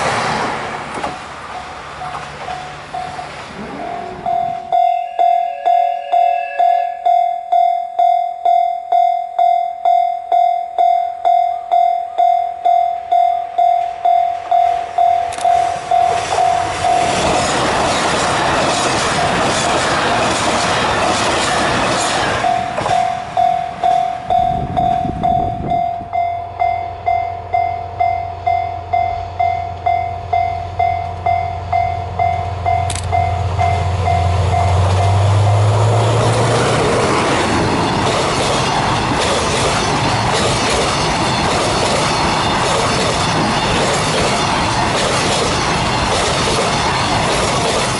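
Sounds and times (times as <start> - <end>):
diesel engine drone: 0.0 - 7.0, 22.4 - 47.3
train passing with wheel noise: 0.0 - 47.9
level-crossing bell ringing: 1.5 - 17.3, 22.4 - 35.8.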